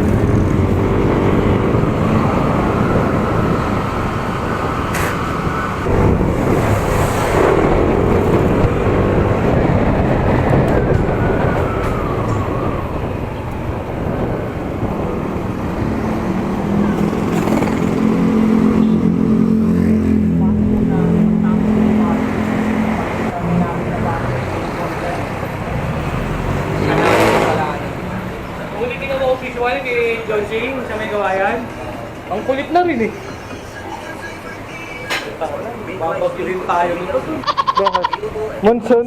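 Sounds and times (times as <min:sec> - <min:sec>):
other vehicles passing: 0:00.0 - 0:39.0
road noise rumble: 0:00.0 - 0:39.0
motorcycle engine running: 0:16.6 - 0:19.2.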